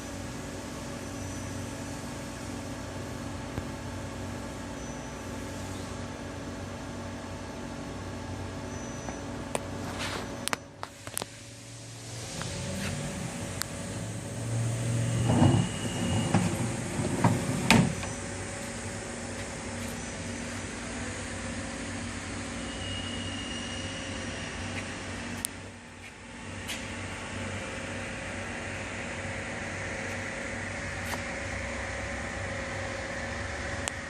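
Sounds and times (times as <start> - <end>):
machinery humming: 0.0 - 34.0
clattering and knocks: 15.2 - 18.2.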